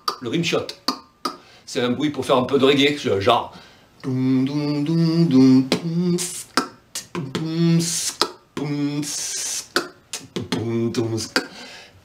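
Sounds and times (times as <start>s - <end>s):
man beatboxing: 0.0s - 1.5s, 4.0s - 11.6s.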